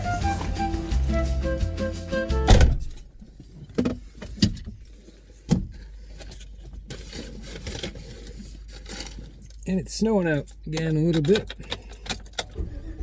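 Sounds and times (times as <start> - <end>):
van engine hum: 0.0 - 6.5, 9.9 - 13.0
loud bump: 2.5 - 3.1.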